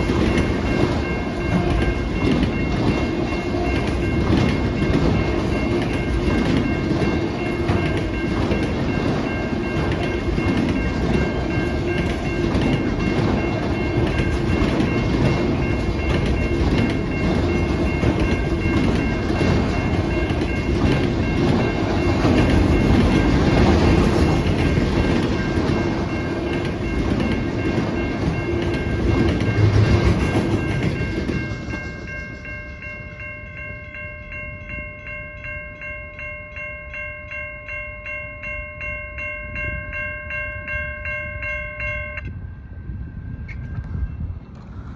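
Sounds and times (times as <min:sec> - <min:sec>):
train wheels clacking over rail joints: 0:00.0 - 0:32.6
crossing bell ringing: 0:00.0 - 0:44.3.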